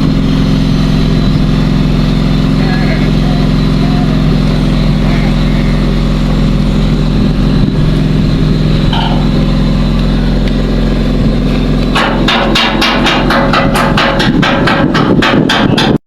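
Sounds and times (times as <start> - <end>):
engine drone: 0.0 - 16.0
rapid hammer blows: 11.9 - 16.0.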